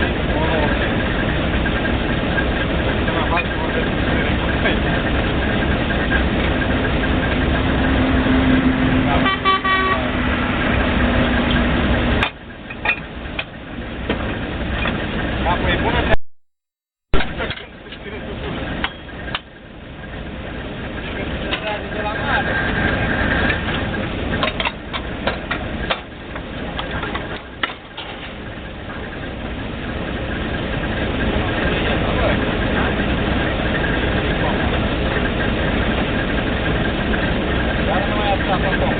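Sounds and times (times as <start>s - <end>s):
drilling rig running loudly: 0.0s - 16.2s, 17.0s - 38.9s
short horn-like tone: 9.2s - 10.2s
sharp clicks and knocks: 12.2s - 15.0s, 17.2s - 18.1s, 18.8s - 19.5s, 23.4s - 28.4s.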